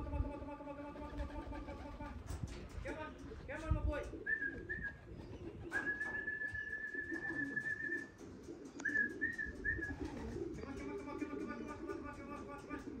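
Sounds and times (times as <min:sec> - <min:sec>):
pigeons cooing: 0:00.0 - 0:13.0
person whistling: 0:05.8 - 0:08.1, 0:08.8 - 0:10.0.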